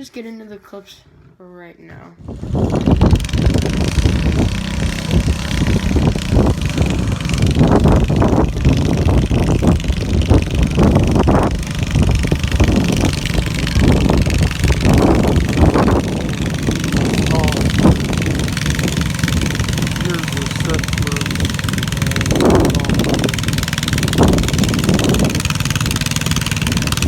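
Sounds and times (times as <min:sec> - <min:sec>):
lawn mower engine running rough: 0:02.2 - 0:27.0
person speaking: 0:16.0 - 0:18.1, 0:19.9 - 0:23.5.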